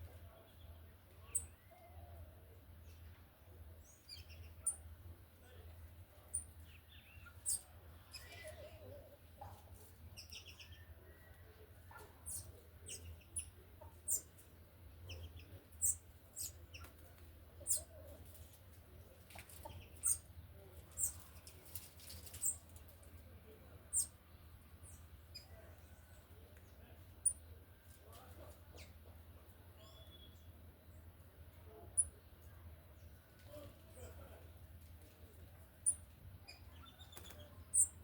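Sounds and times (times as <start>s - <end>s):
faint low hum: 0.0s - 38.0s.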